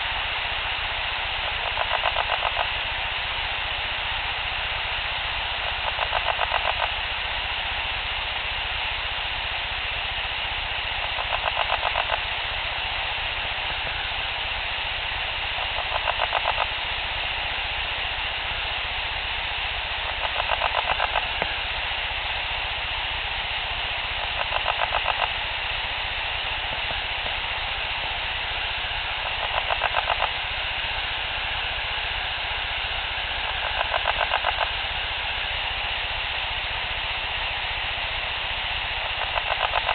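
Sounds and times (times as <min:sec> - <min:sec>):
steady night-time hiss: 0:00.0 - 0:39.9
throaty pulsing rattle call: 0:01.4 - 0:02.8, 0:05.5 - 0:07.1, 0:10.9 - 0:12.4, 0:15.2 - 0:17.0, 0:20.0 - 0:21.5, 0:24.0 - 0:25.6, 0:28.5 - 0:31.7, 0:33.2 - 0:35.2, 0:38.9 - 0:39.9.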